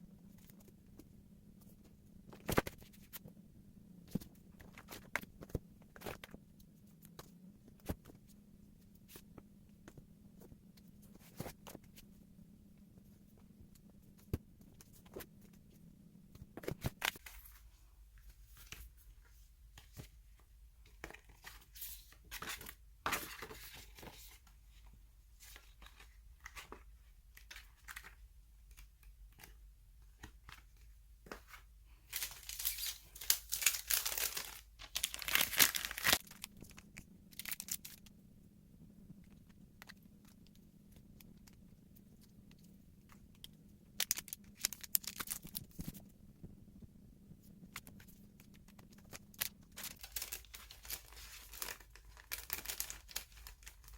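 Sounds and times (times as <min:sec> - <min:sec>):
packaging tearing and crinkling: 0:32.1 - 0:36.3, 0:49.3 - 0:53.9.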